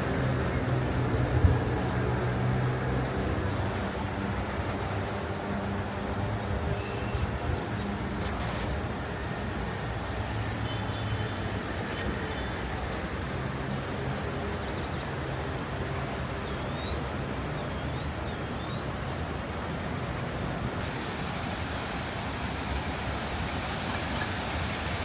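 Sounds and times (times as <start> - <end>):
vehicle engine hum: 0.0 - 18.5
rain hissing: 20.0 - 25.0.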